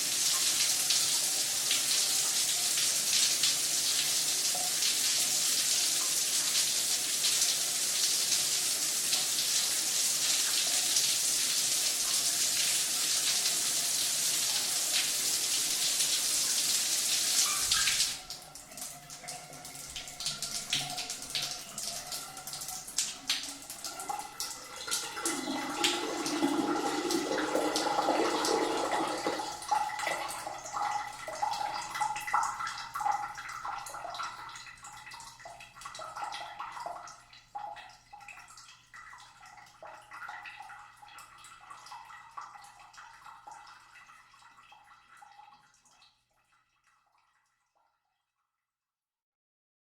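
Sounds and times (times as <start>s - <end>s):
shower spray running: 0.0s - 18.3s
water dripping and trickling: 0.0s - 48.4s.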